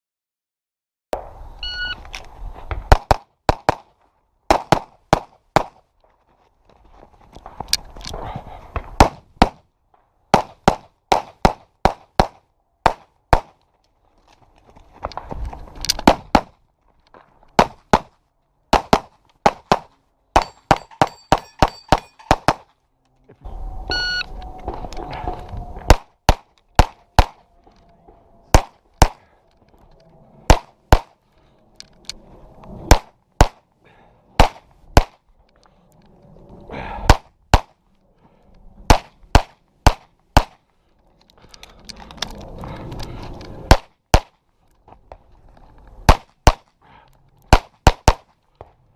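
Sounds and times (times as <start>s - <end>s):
steel targets clanging: 20.4s - 22.6s
wind rumbling on microphone: 23.4s - 26.0s.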